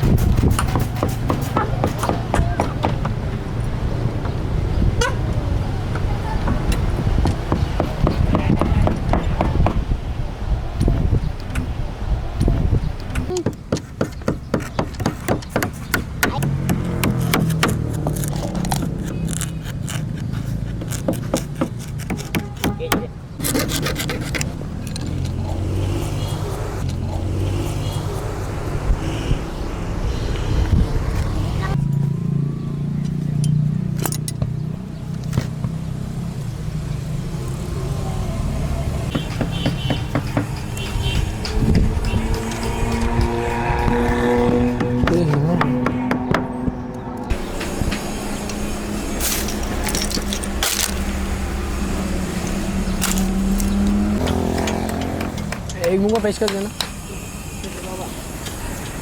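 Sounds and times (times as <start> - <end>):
sharp crunching clicks: 13.0 - 25.6, 49.2 - 51.4, 52.4 - 56.0.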